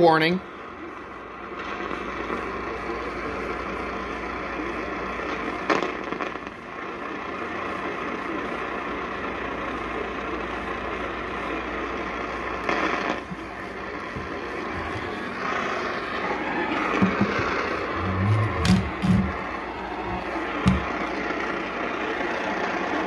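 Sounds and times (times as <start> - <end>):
radio static crackles: 0.0 - 23.0
radio static hiss: 0.0 - 23.0.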